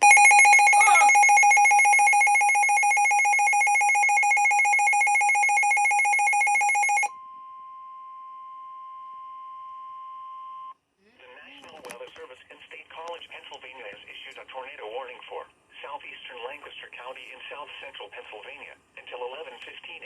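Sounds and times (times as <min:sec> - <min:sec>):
pulsing electronic alert: 0:00.0 - 0:07.1
steady alarm tone: 0:00.0 - 0:07.1.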